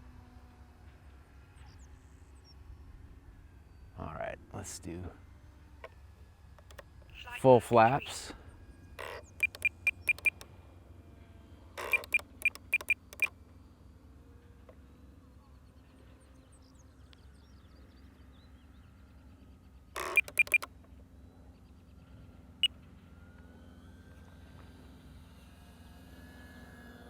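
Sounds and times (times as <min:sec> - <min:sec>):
short electronic beeps: 0:06.7 - 0:08.2, 0:09.4 - 0:10.4, 0:11.8 - 0:13.3, 0:20.0 - 0:20.7.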